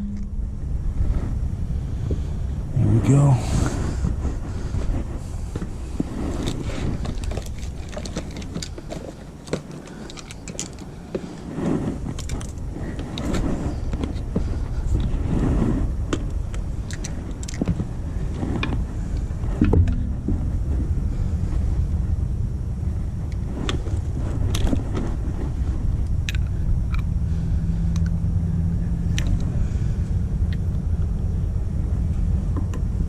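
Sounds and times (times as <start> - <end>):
steady low rumble: 0.0 - 33.0
handling sounds: 4.0 - 15.2.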